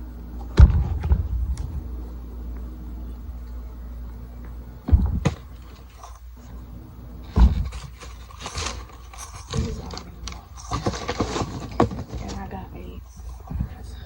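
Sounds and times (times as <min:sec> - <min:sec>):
paper crinkling and rustling: 0:07.5 - 0:12.9.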